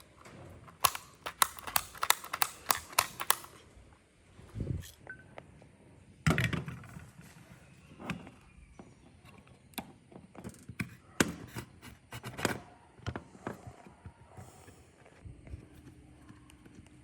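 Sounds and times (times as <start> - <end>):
hand tools clicking and knocking: 0.0 - 3.6.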